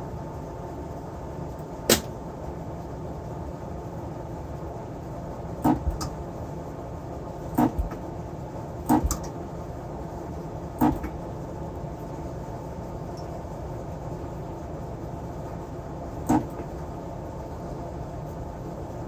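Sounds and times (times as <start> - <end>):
steady background hum: 0.0 - 19.0
sharp short clicks: 1.9 - 2.2.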